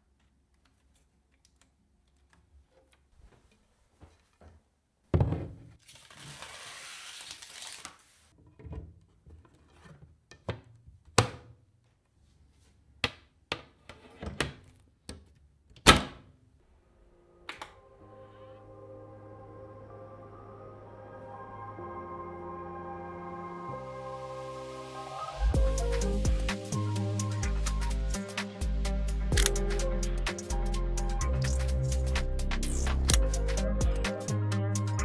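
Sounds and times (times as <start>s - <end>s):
soft background music: 17.2s - 35.0s.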